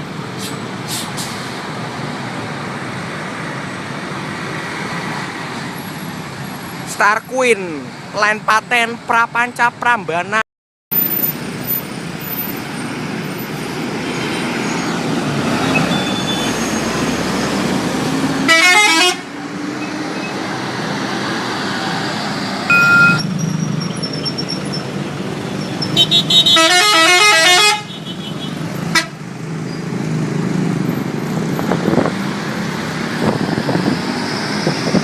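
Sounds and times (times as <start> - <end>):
traffic and bus engine rumble: 0.0 - 35.0
musical bus horn notes: 18.4 - 19.3, 25.9 - 29.2
two-tone horn blast: 18.5 - 19.3, 26.0 - 28.0, 28.9 - 29.2.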